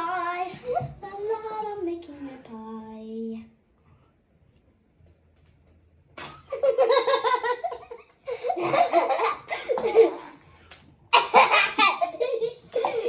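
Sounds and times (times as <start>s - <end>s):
children laughing: 6.5s - 10.4s, 11.1s - 13.0s.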